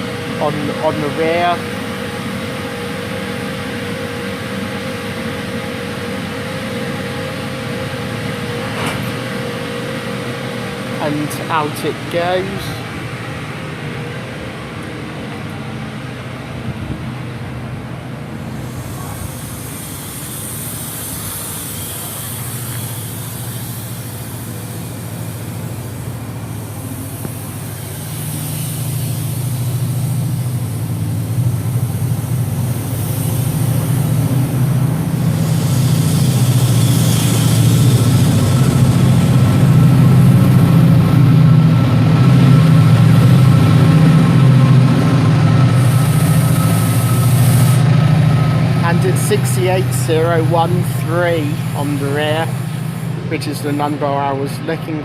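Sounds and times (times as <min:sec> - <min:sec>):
diesel locomotive engine working hard: 0:00.0 - 0:55.0
moving train hiss: 0:00.0 - 0:55.0.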